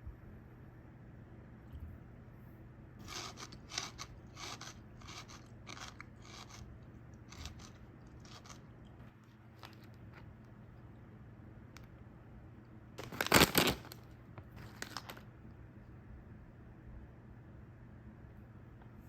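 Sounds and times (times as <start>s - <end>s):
person chewing crunchy snacks: 3.0s - 9.0s, 13.0s - 14.0s.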